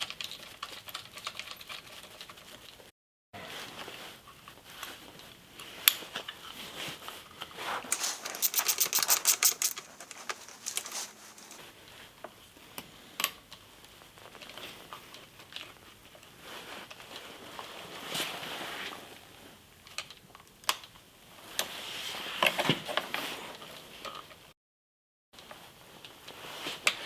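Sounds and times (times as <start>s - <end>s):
metal parts and tools clicking: 7.9s - 11.6s
rapid run of clicks: 8.0s - 11.6s.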